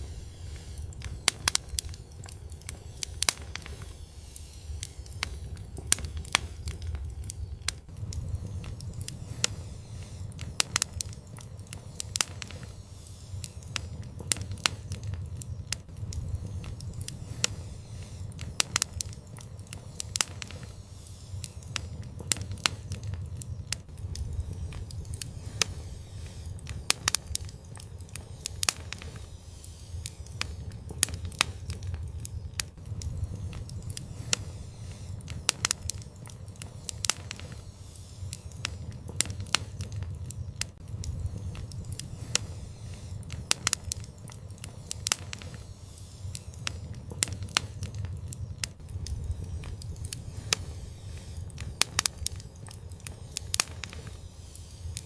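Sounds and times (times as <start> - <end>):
fire pops and crackles: 0.0 - 55.0
low rumble of flames: 0.0 - 55.0.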